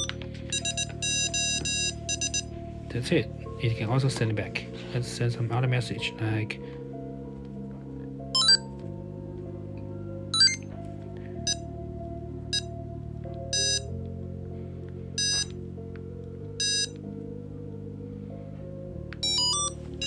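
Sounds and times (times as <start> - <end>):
buzzer beeping morse code: 0.0 - 2.5, 10.4 - 10.6, 13.6 - 13.9, 15.2 - 15.5, 16.6 - 16.9, 19.2 - 19.8
background music with sustained chords: 0.0 - 20.0.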